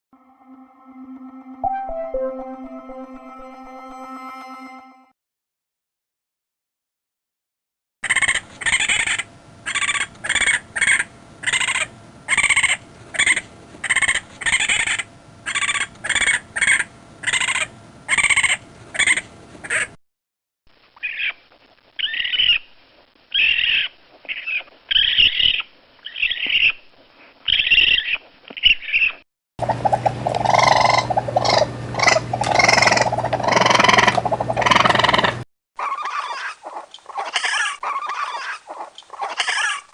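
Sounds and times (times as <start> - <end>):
raccoon screams: 23.3 - 26.8, 30.5 - 36.6, 37.2 - 39.9.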